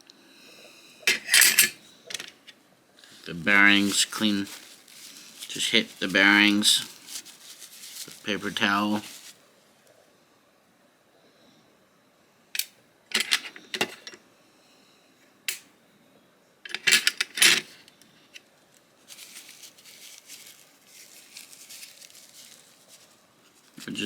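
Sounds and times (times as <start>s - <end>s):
paper towel rubbing: 3.1s - 9.4s, 19.1s - 24.0s.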